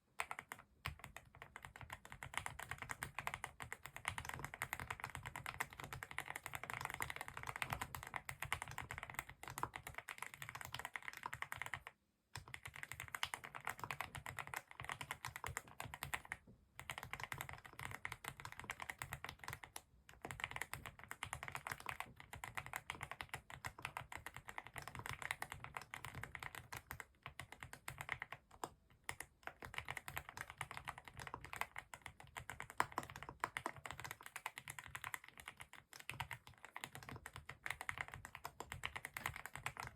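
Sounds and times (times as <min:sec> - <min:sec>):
mechanical keyboard typing: 0:00.2 - 0:39.9.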